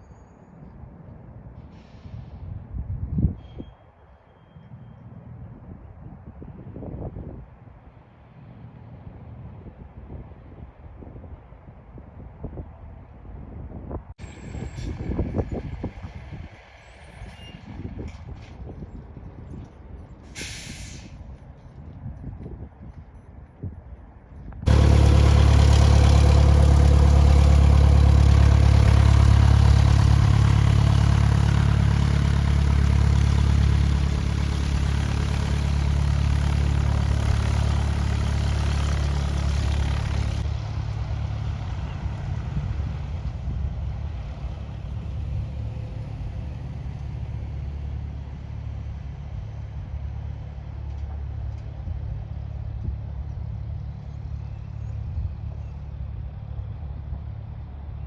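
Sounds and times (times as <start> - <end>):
propeller aircraft engine: 24.6 - 58.0.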